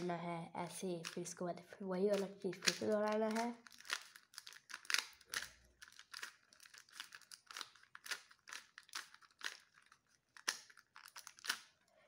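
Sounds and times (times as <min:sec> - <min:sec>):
puzzle cube clicking as twisted: 0:02.1 - 0:11.7.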